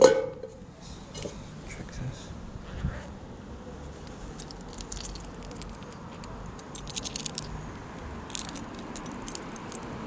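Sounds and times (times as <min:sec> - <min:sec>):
metallic jingling and clinking: 0:04.4 - 0:07.6, 0:08.3 - 0:09.9.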